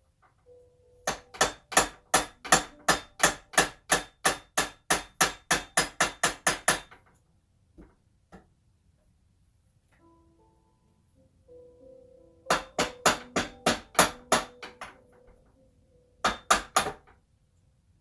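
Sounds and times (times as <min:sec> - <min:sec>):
hammer striking metal: 0:01.1 - 0:07.0, 0:12.5 - 0:15.2, 0:16.2 - 0:17.1.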